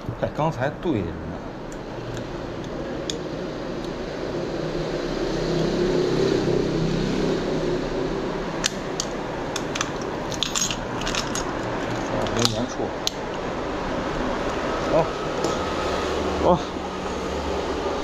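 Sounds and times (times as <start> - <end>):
mechanical hum: 0.0 - 18.0
sharp metallic clicks: 8.6 - 13.5.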